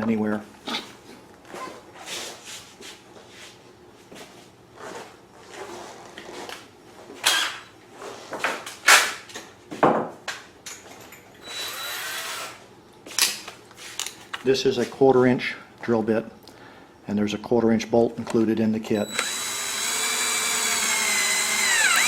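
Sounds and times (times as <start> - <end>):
cordless drill running: 11.4 - 12.6, 19.0 - 22.0.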